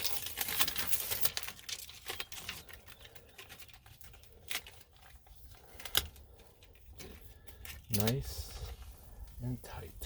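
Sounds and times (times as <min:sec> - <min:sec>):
tape crinkling and rustling: 0:00.0 - 0:10.0.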